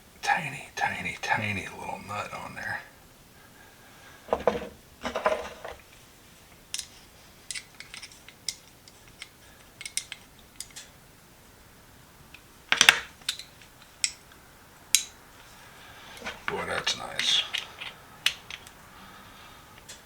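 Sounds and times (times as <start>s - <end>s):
small metal parts clicking: 6.7s - 10.9s, 12.7s - 14.2s, 16.8s - 18.8s.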